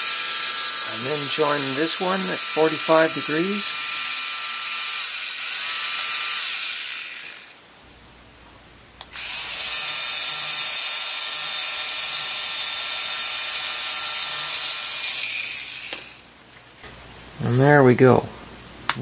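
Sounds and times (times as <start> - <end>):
small motor whirring: 0.0 - 7.6, 9.1 - 16.3.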